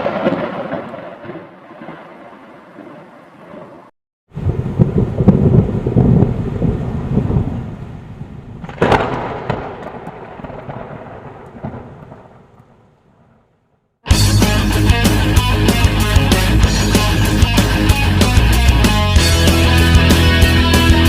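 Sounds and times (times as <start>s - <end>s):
sharp thunder crack: 0.0s - 13.5s
thunder rumble: 0.0s - 13.9s.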